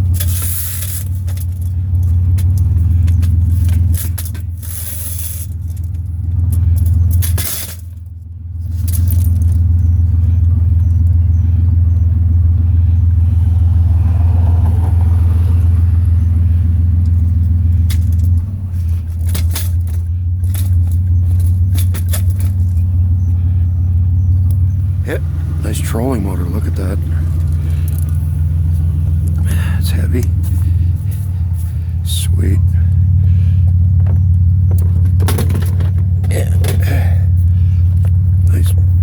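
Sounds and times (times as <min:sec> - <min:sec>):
short rattles and clicks: 0:00.0 - 0:11.2, 0:17.0 - 0:23.0, 0:27.0 - 0:31.9, 0:33.7 - 0:38.6
engine and road drone: 0:00.0 - 0:39.0.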